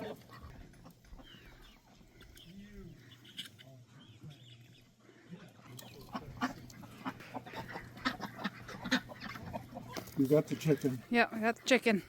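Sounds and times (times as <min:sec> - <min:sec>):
chickens clucking: 0:00.0 - 0:12.0.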